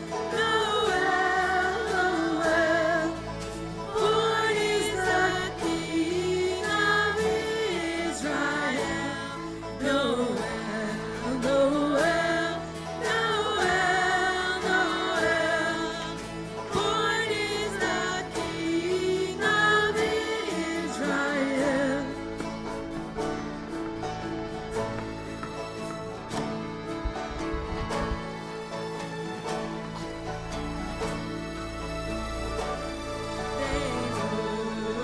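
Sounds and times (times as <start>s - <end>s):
person singing with vibrato: 0.0s - 23.5s, 32.8s - 35.0s
sustained instrumental chords: 0.0s - 35.0s.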